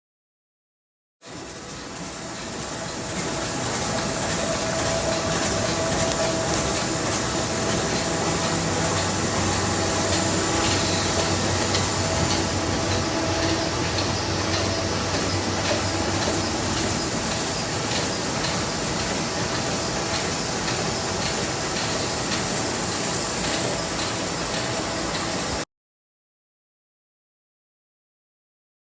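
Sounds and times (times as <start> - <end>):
printing press mechanical clatter: 1.3 - 25.6.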